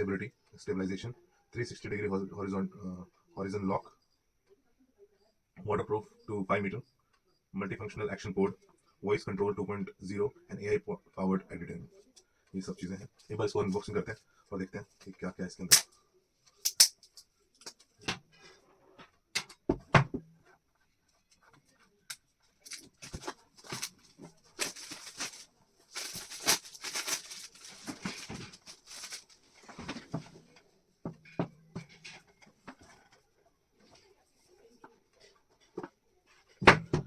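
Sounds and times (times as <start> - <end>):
packaging rustling and crinkling: 22.6 - 30.1.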